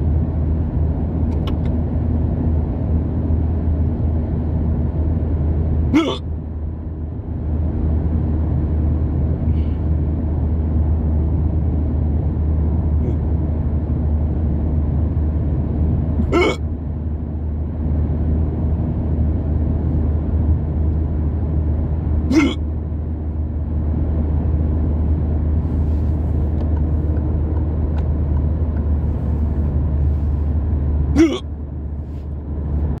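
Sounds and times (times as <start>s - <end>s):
car cabin rumble: 0.0s - 33.0s
person hiccuping: 5.9s - 6.3s, 16.2s - 16.7s, 22.3s - 22.6s, 31.2s - 31.5s.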